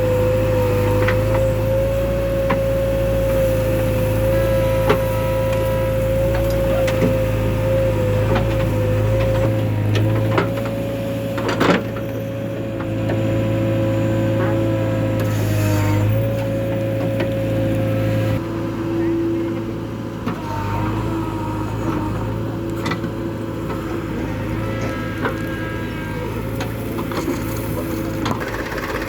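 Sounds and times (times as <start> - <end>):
diesel engine humming: 0.0 - 29.0
clatter: 26.6 - 29.0.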